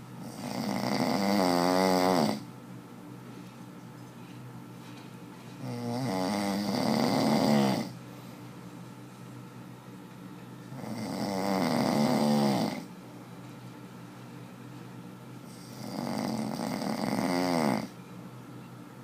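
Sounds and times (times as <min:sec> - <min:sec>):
person snoring: 0:00.2 - 0:02.5, 0:05.6 - 0:08.0, 0:10.8 - 0:12.9, 0:15.5 - 0:17.9.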